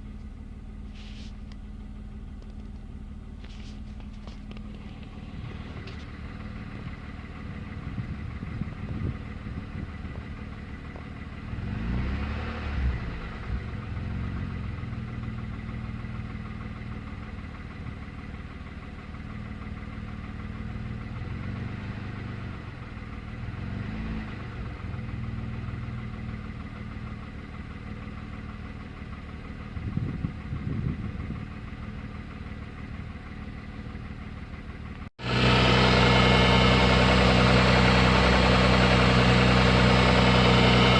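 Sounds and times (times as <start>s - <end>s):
car engine idling and revving: 0.0s - 40.9s.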